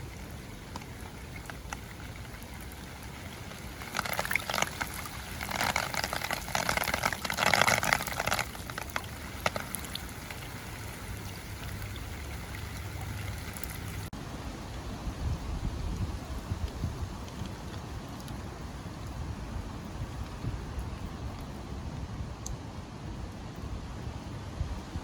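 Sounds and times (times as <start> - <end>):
drops splashing into puddle: 0.0 - 14.1
raindrops hitting umbrella: 0.0 - 14.1.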